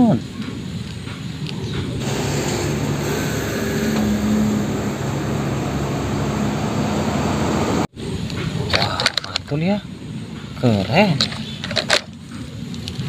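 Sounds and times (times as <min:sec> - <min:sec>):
engine-like drone: 0:00.6 - 0:10.6
low hum: 0:01.4 - 0:08.8.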